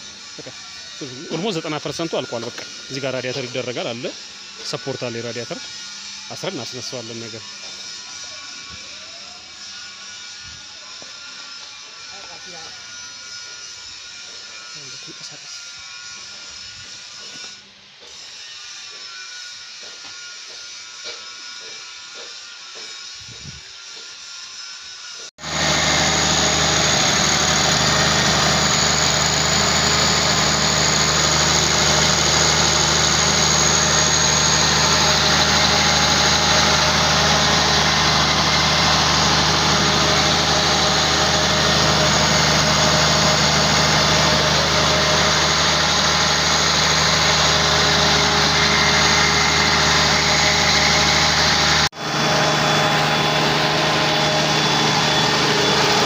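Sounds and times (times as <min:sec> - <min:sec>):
diesel engine idling: 0:25.4 - 0:56.0.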